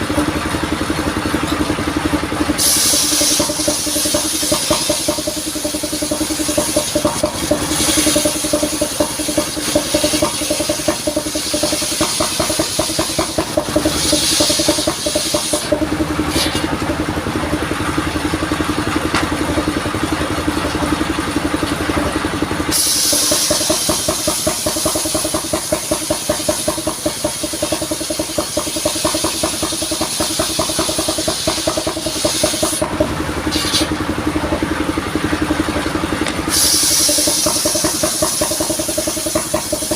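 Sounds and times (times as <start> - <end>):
vehicle engine running: 0.0 - 39.9
saw blade hissing through wood: 2.6 - 16.7, 22.7 - 32.8, 33.5 - 34.0, 36.4 - 39.9.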